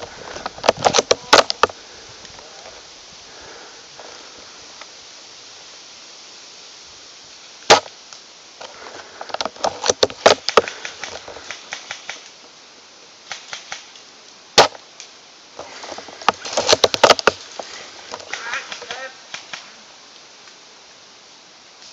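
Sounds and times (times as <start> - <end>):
wind noise: 0.0 - 6.0
airsoft gun cracks: 13.2 - 14.0.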